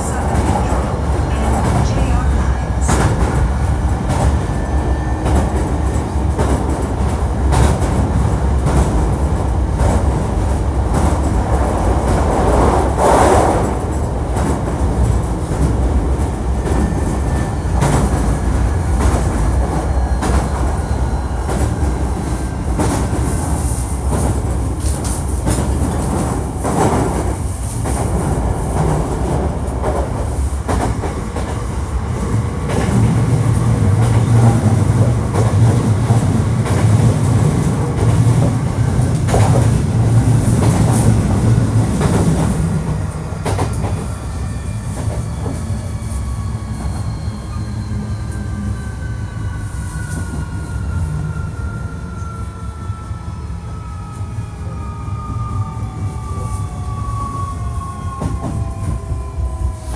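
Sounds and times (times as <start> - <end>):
train wheels rumbling on rail: 0.0 - 59.9
rail-joint clicks: 21.4 - 44.1.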